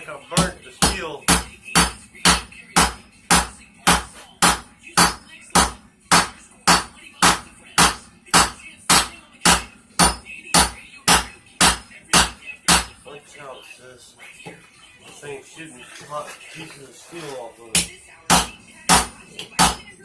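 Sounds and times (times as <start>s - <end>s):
hammer striking metal on anvil: 0.4s - 13.0s, 17.8s - 19.9s.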